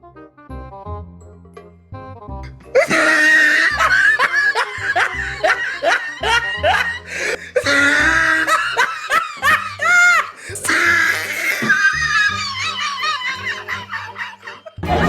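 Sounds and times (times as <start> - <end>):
background music with bass line: 0.0 - 3.1, 14.8 - 15.0
person laughing loudly: 2.8 - 15.0.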